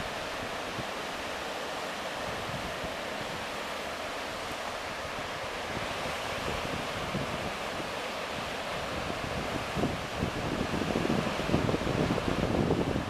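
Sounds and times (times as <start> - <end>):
breaking waves: 0.0 - 13.0
wind on microphone: 2.2 - 3.5, 4.7 - 13.0.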